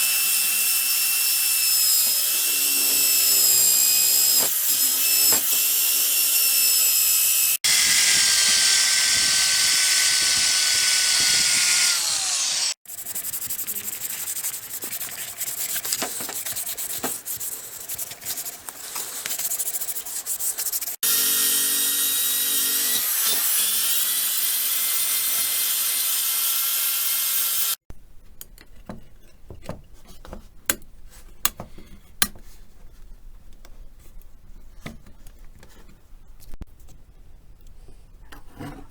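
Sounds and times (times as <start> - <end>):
power tool motor whine: 6.4 - 12.8
scraping and rubbing: 12.9 - 21.0.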